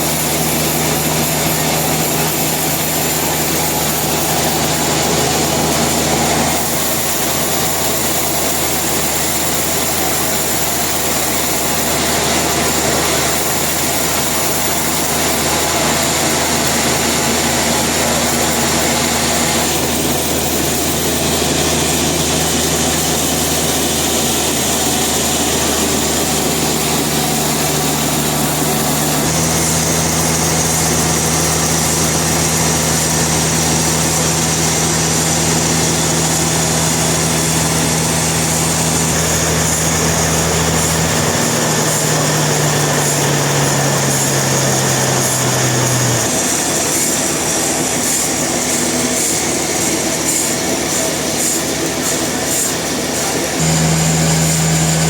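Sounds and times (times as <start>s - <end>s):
high machine whine: 0.0s - 55.0s
sawmill machinery hum: 0.0s - 55.0s.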